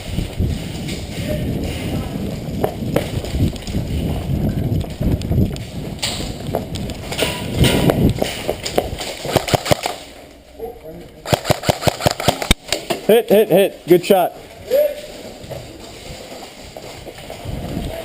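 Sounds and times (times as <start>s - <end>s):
running footsteps: 0.0s - 10.5s, 14.1s - 18.0s
sharp clicks: 8.0s - 10.0s, 11.3s - 12.8s.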